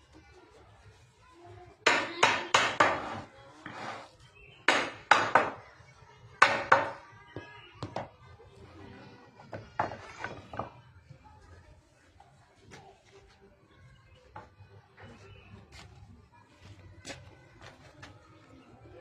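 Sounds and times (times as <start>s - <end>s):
tool striking wood: 4.7s - 5.6s.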